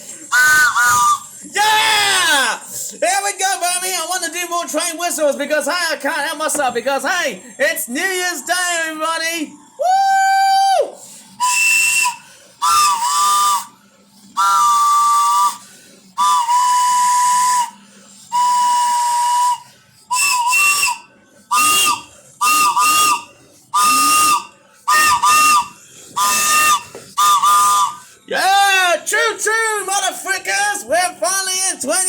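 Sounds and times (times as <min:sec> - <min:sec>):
hand-held train whistle toots: 0:00.0 - 0:02.5, 0:09.8 - 0:28.2.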